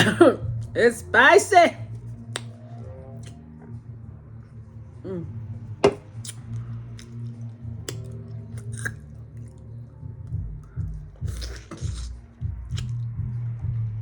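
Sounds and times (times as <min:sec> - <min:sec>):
background music with bass line: 0:00.0 - 0:14.0
open-mouthed chewing and lip smacking: 0:02.2 - 0:02.6, 0:03.2 - 0:03.4, 0:06.2 - 0:13.1.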